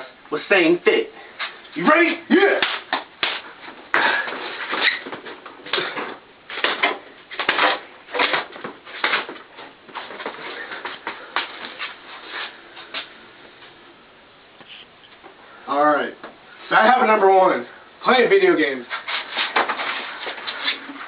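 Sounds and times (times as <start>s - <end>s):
scuffs and thumps of bodies moving: 1.2s - 13.9s, 18.7s - 21.0s.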